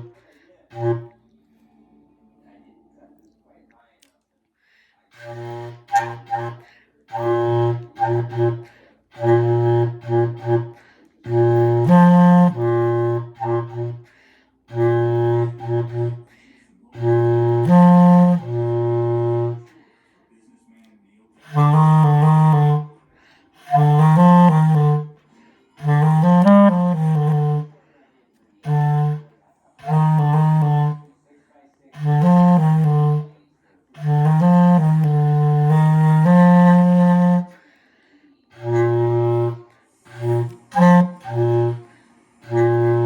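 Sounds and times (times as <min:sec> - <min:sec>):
solo woodwind instrument playing: 0:00.0 - 0:01.2, 0:05.2 - 0:14.1, 0:14.7 - 0:19.7, 0:21.4 - 0:25.2, 0:25.8 - 0:27.8, 0:28.6 - 0:31.1, 0:31.9 - 0:33.4, 0:34.0 - 0:37.6, 0:38.5 - 0:43.0.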